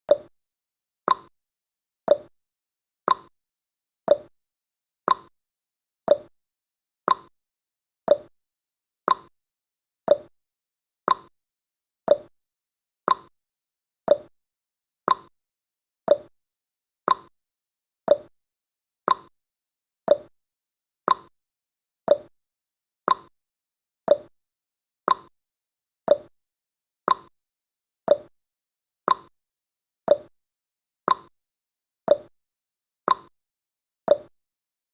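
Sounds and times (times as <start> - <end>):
timer ticking clicks: 0.1 - 0.3, 1.1 - 1.3, 2.1 - 2.3, 3.1 - 3.3, 4.1 - 4.3, 5.1 - 5.3, 6.1 - 6.3, 7.1 - 7.3, 8.1 - 8.3, 9.1 - 9.3, 10.1 - 10.3, 11.1 - 11.3, 12.1 - 12.3, 13.1 - 13.3, 14.1 - 14.3, 15.1 - 15.3, 16.1 - 16.3, 17.1 - 17.3, 18.1 - 18.3, 19.1 - 19.3, 20.1 - 20.3, 21.1 - 21.3, 22.1 - 22.3, 23.1 - 23.3, 24.1 - 24.3, 25.1 - 25.3, 26.1 - 26.3, 27.1 - 27.3, 28.1 - 28.3, 29.1 - 29.3, 30.1 - 30.3, 31.1 - 31.3, 32.1 - 32.3, 33.1 - 33.3, 34.1 - 34.3.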